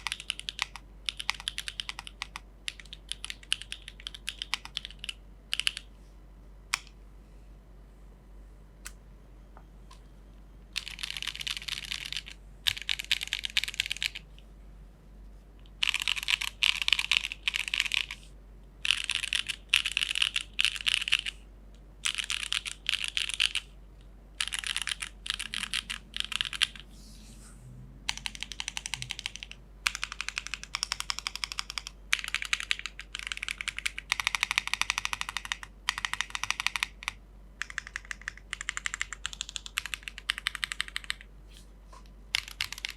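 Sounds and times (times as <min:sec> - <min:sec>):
fast mechanical keyboard typing: 0:00.0 - 0:05.9, 0:10.8 - 0:14.3, 0:15.8 - 0:21.4, 0:22.0 - 0:23.8, 0:24.4 - 0:26.9, 0:28.1 - 0:41.3, 0:42.3 - 0:42.9.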